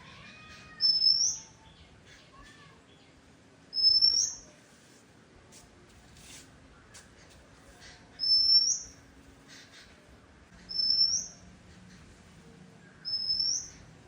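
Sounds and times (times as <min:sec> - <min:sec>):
bird singing whistled notes: 0:00.8 - 0:01.6, 0:03.7 - 0:04.4, 0:08.2 - 0:09.0, 0:10.7 - 0:11.4, 0:12.9 - 0:13.8.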